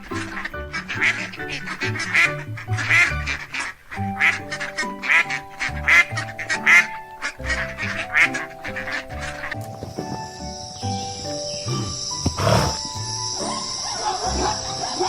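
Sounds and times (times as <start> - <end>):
background music with bass: 7.4 - 14.8.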